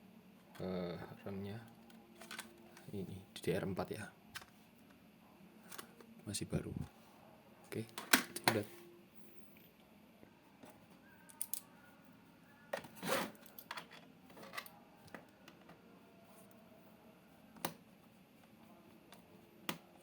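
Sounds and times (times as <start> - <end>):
scrape: 12.9 - 13.4.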